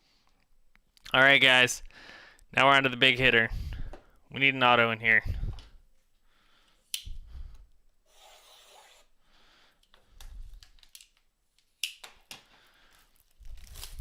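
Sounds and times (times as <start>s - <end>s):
cardboard and plastic wrap rubbing: 13.2s - 14.0s.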